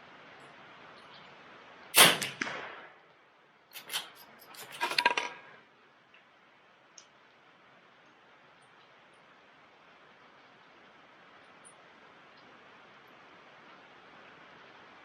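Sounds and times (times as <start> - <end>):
rifle shot crack: 2.0 - 3.0.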